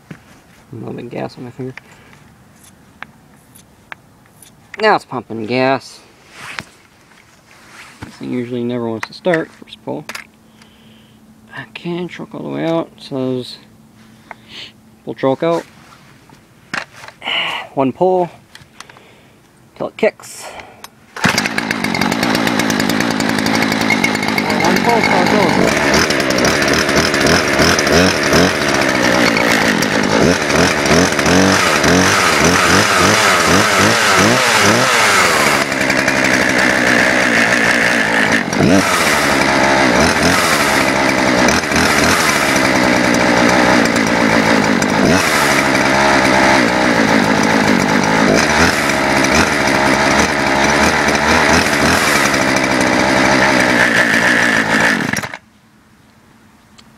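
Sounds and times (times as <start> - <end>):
chainsaw revving: 21.2 - 55.4.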